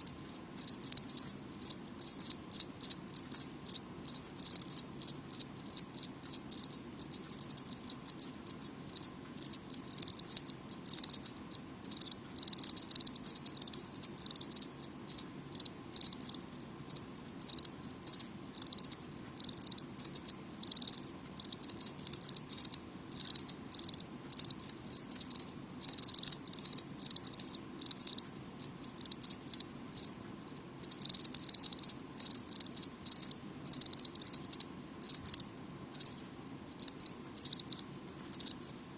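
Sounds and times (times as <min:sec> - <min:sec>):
cricket chirping: 0:00.0 - 0:30.2, 0:30.8 - 0:36.2, 0:36.8 - 0:38.6.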